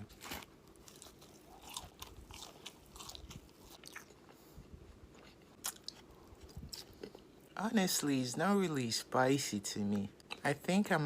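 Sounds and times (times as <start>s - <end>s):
person chewing crunchy food: 0.0s - 7.6s.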